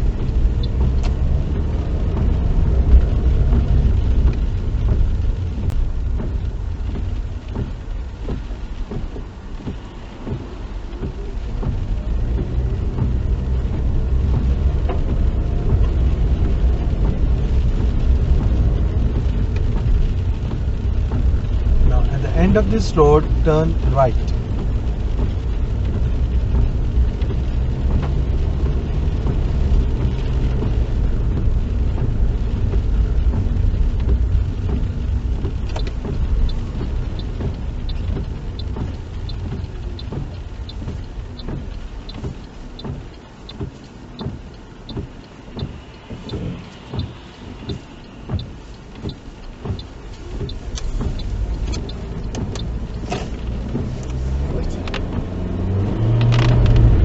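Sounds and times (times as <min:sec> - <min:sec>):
road and engine rumble: 0:00.0 - 0:57.0
turn indicator ticking: 0:00.0 - 0:57.0.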